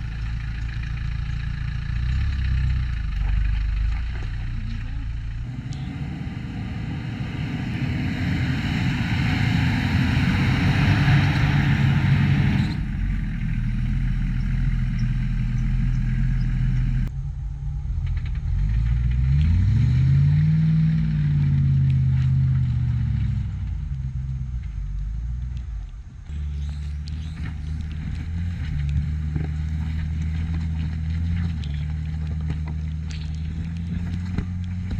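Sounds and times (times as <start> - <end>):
off-road engine revving: 0.0 - 34.9
rushing noise: 5.4 - 13.3.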